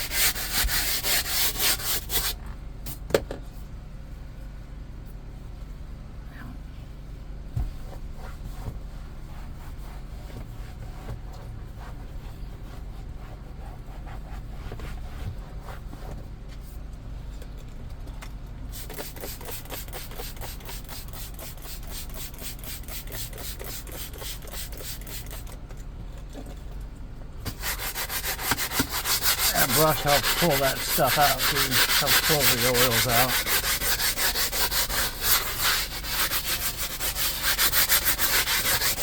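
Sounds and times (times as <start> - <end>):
brush scrubbing vinyl seat: 0.0 - 2.4, 7.8 - 16.0, 18.7 - 25.6, 27.5 - 39.0.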